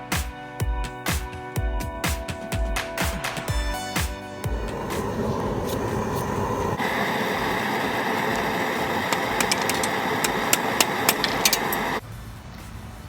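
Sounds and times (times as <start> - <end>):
forge roaring: 4.4 - 12.0
sharp clicks: 8.2 - 12.0.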